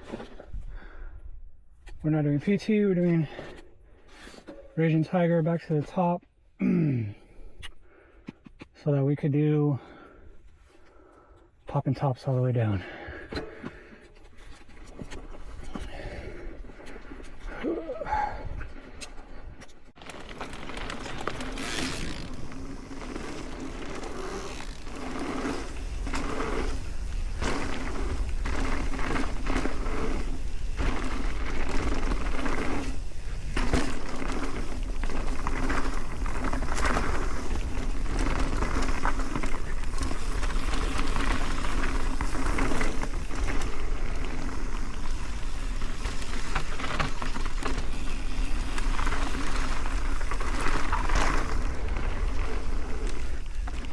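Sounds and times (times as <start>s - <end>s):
tyres rolling over dirt: 19.9s - 53.9s
bike rattles and clunks: 20.0s - 53.9s.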